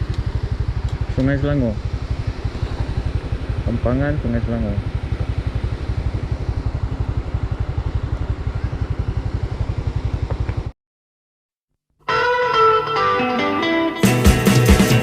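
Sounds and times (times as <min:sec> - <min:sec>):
motorcycle engine running: 0:00.0 - 0:10.8.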